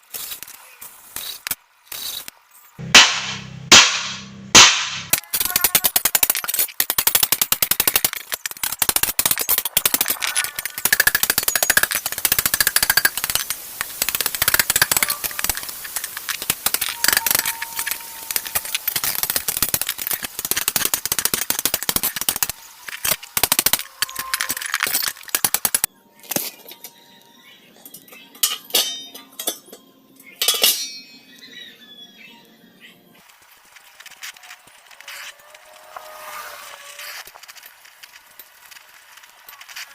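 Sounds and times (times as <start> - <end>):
gas welding crackle: 0.0 - 25.9, 33.2 - 39.9.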